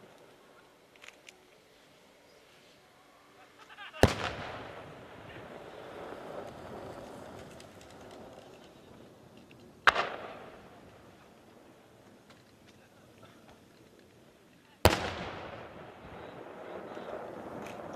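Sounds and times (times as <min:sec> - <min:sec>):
firework bangs with rumble: 0:04.0 - 0:05.4, 0:09.8 - 0:10.7, 0:14.9 - 0:16.3.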